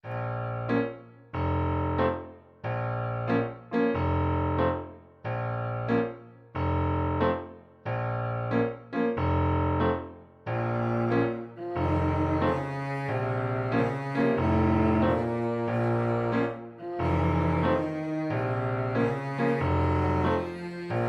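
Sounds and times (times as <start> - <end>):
keyboard chords over deep bass: 0.1 - 5.9.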